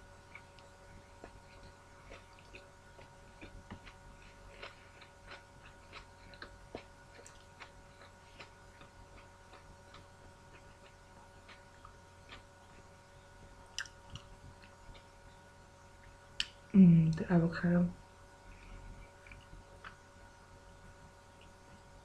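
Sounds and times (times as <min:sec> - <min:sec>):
faint steady hum: 0:00.0 - 0:22.0
chewing mouth clicks: 0:00.3 - 0:12.4, 0:19.2 - 0:20.0.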